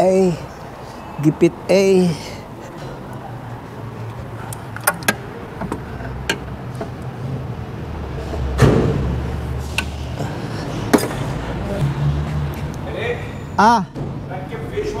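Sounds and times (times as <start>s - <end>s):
low hum: 3.2s - 12.0s.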